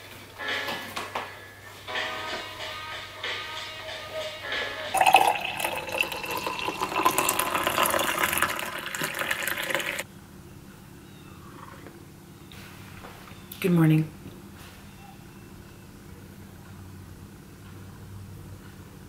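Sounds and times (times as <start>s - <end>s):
background music: 0.0s - 8.8s
running water rushing: 5.0s - 10.0s.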